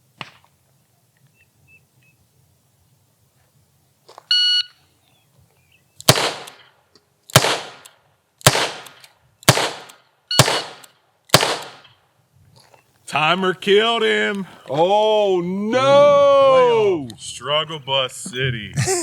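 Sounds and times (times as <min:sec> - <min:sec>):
electronic timer beep: 0:04.3 - 0:04.8.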